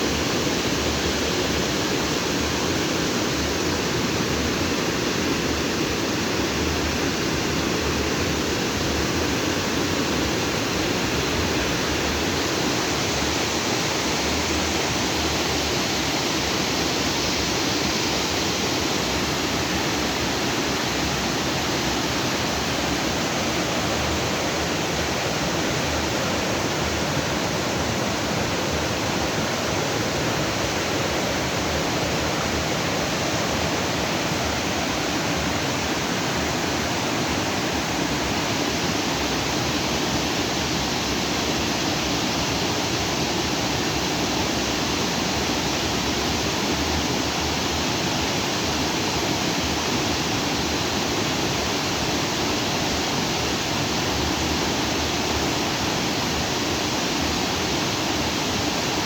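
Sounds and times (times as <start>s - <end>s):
stream water rushing over rocks: 0.0s - 59.0s.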